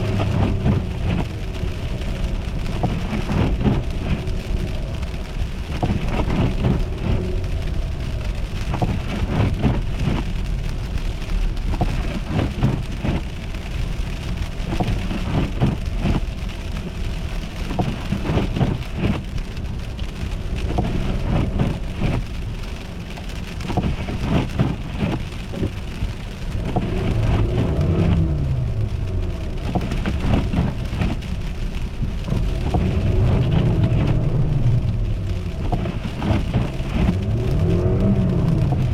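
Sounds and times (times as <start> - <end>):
car driving on slushy road: 0.0 - 38.9
sharp crackles of ice: 0.0 - 38.9
car engine revving: 26.6 - 38.9.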